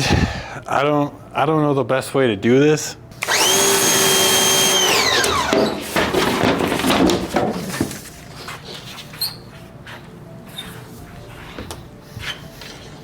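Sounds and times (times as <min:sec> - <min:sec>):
pressure washer motor whine: 0:03.2 - 0:05.7
knocks and rattles: 0:05.3 - 0:08.0.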